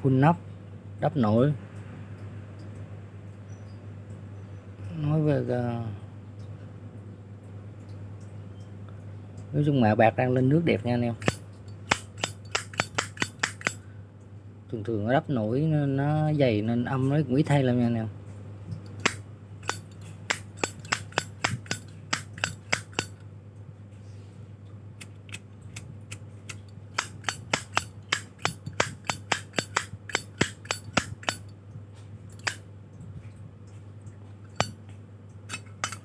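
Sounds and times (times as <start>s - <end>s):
steady low hum: 0.0s - 36.0s
lighter lid metallic clicks: 11.2s - 13.8s, 18.9s - 23.2s, 25.8s - 31.5s, 32.4s - 32.6s, 34.6s - 34.8s, 35.5s - 36.0s.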